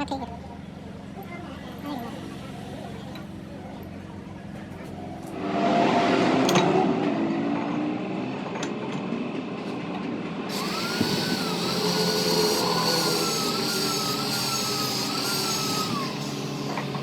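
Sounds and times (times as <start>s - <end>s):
power tool whining: 10.5s - 17.0s.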